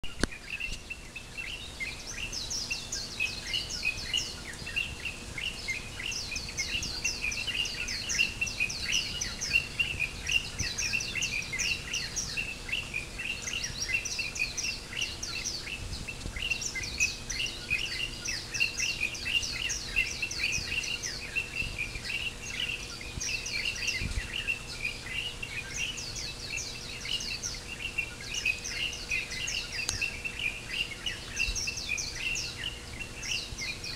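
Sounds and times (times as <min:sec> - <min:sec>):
small birds chirping: 0:00.0 - 0:33.9.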